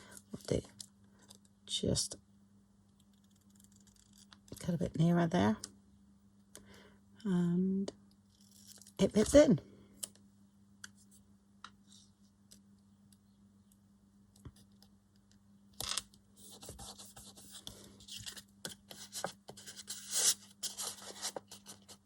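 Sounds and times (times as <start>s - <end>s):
paper rustling and scraping: 16.5s - 22.0s.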